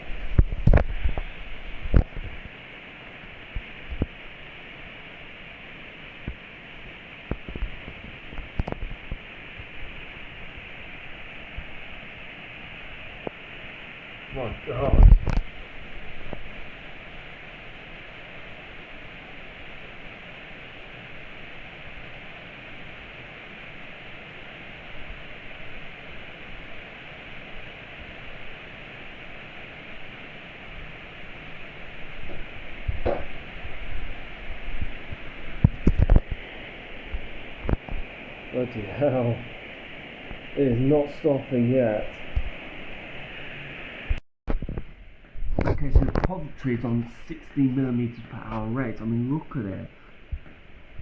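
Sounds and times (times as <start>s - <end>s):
torrential rain hissing: 0.0s - 51.0s
sharp taps and knocks: 32.3s - 33.4s.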